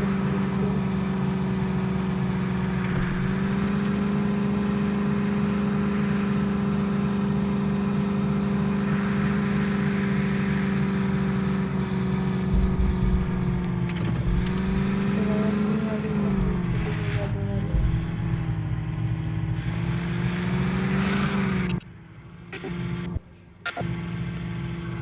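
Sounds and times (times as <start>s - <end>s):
vehicle engine droning: 0.0s - 25.0s.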